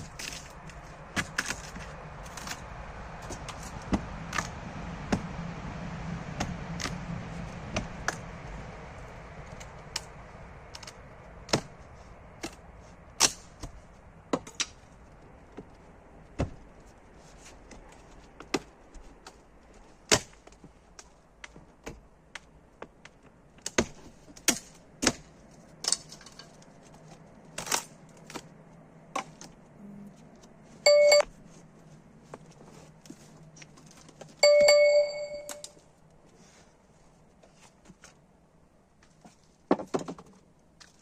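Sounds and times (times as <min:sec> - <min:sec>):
loud metallic ring: 0:34.4 - 0:35.7.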